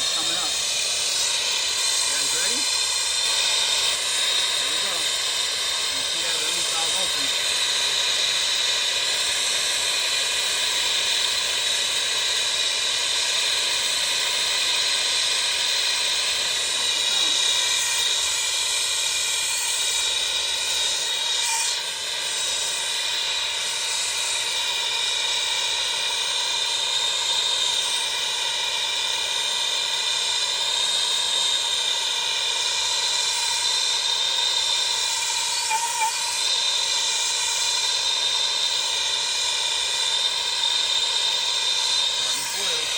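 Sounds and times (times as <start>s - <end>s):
loud steady hissing: 0.0s - 42.9s.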